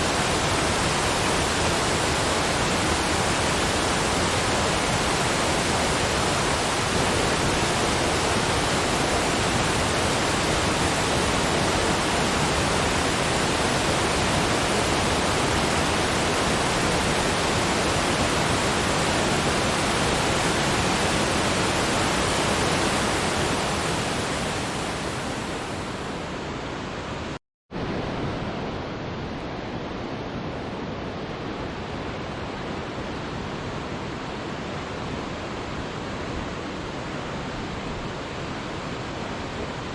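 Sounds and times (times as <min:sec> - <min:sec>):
waterfall rushing: 0:00.0 - 0:26.4.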